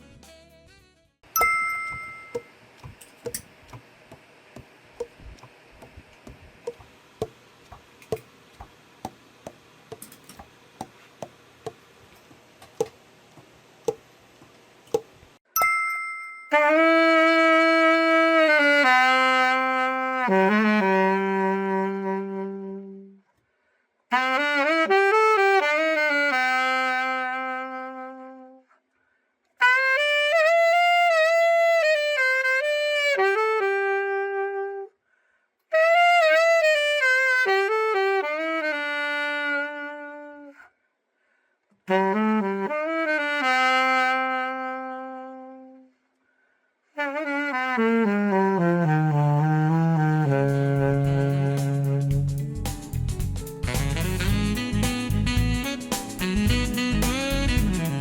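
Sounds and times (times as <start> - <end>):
alto saxophone playing: 5.0 - 6.9, 16.5 - 23.3, 24.1 - 28.7, 29.6 - 35.0, 35.7 - 40.7, 41.8 - 46.0, 47.0 - 52.6, 53.6 - 58.0.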